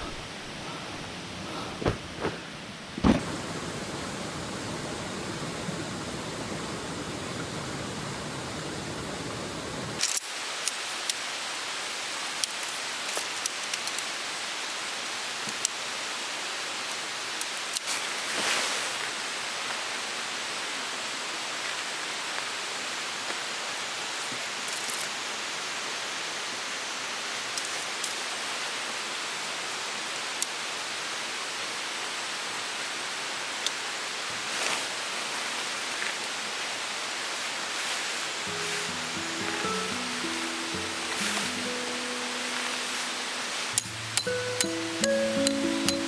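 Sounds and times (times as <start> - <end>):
river flowing over rocks: 37.0 - 46.0.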